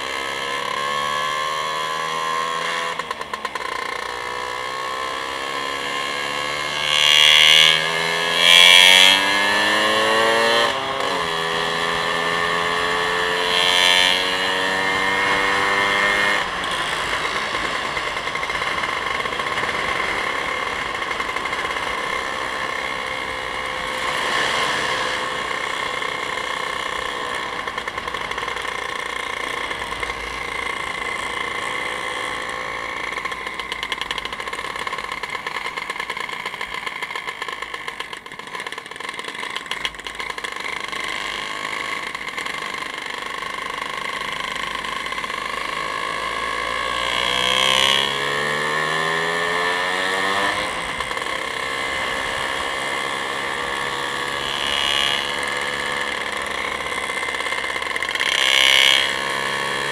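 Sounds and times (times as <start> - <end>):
vehicle engine accelerating: 0.0 - 36.8.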